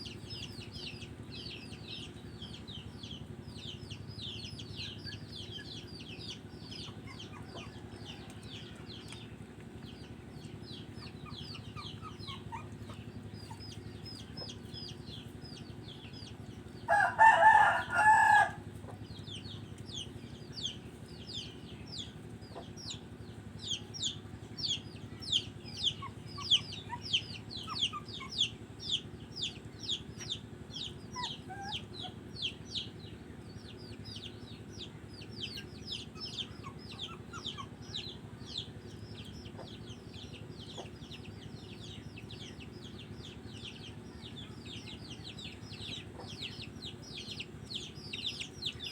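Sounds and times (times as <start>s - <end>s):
chicks peeping: 0.0s - 48.9s
low steady hum: 0.0s - 48.9s
rooster crowing: 16.9s - 18.7s.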